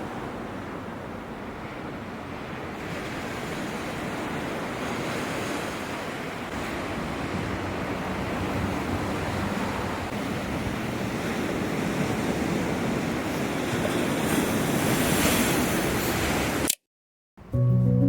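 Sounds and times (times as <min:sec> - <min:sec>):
ocean surf washing onto beach: 0:00.0 - 0:16.7.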